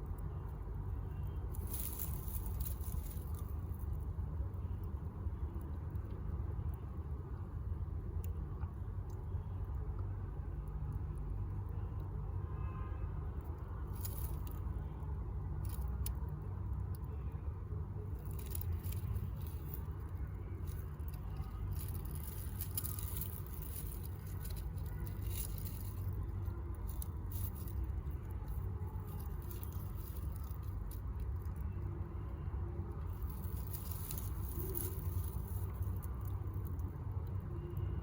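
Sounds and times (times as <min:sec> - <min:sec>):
steady low rumble: 0:00.0 - 0:12.4, 0:13.3 - 0:38.0
faint rustling and scratching: 0:01.4 - 0:04.1, 0:13.8 - 0:15.0, 0:18.0 - 0:32.0, 0:33.0 - 0:37.4.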